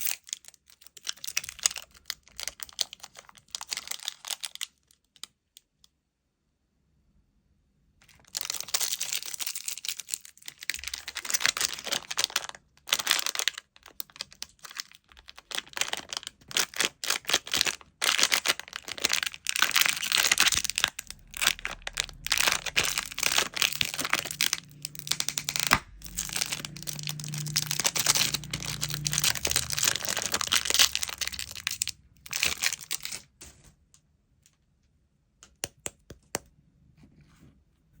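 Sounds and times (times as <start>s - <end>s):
plastic wrappers crackling: 0.0s - 4.8s, 8.1s - 33.4s.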